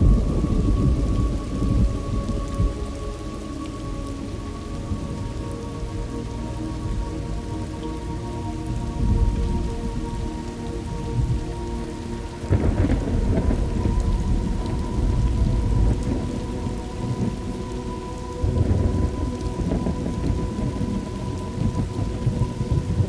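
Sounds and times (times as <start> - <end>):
rolling thunder: 0.0 - 3.0, 12.4 - 17.7, 18.4 - 23.0
steady rain: 0.0 - 23.0.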